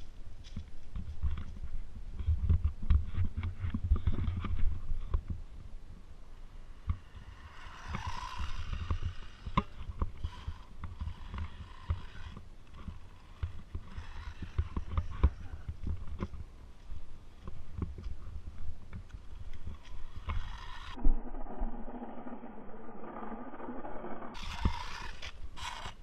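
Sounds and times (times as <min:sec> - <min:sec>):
electric motor hiss and whine: 0:06.6 - 0:15.7, 0:19.7 - 0:26.0.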